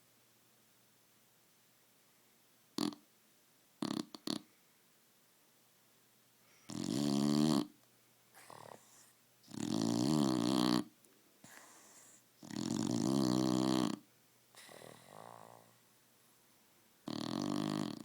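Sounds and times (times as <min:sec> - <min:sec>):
dog snoring: 0:02.8 - 0:03.0, 0:03.8 - 0:04.5, 0:06.7 - 0:07.8, 0:08.4 - 0:15.8, 0:17.0 - 0:18.0
dog breathing softly: 0:08.3 - 0:09.7, 0:11.4 - 0:13.0, 0:14.5 - 0:16.5.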